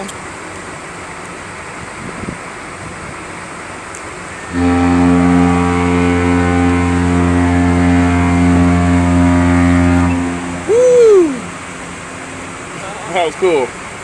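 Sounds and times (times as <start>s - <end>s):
deep ship horn blast: 4.5s - 13.2s.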